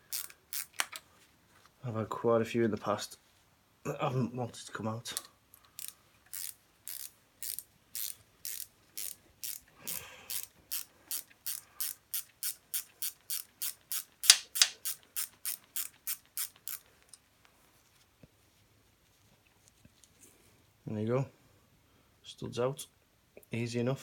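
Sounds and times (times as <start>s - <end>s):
ratchet wrench clicking: 0.1s - 0.8s, 5.8s - 9.7s, 10.3s - 16.8s.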